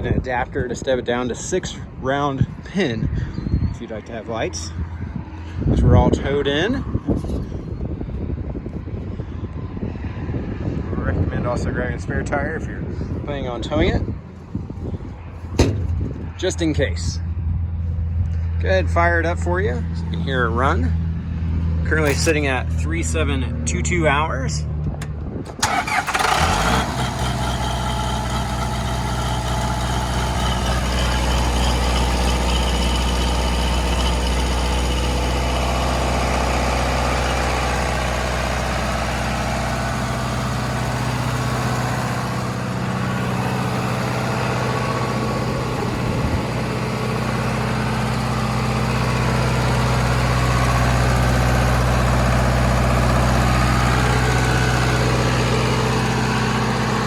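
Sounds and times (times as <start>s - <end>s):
generator diesel engine running: 11.4s - 17.2s, 21.5s - 24.2s, 25.0s - 57.0s.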